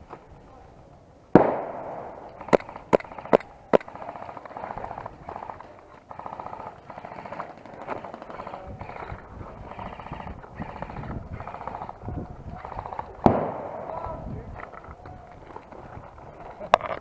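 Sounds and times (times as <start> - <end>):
airsoft gun shots: 1.4 - 3.8, 13.2 - 14.1.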